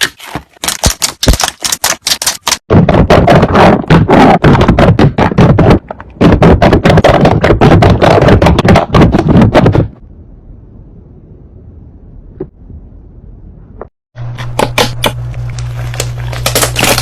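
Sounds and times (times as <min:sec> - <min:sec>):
slime popping and crackling: 0:15.0 - 0:17.0.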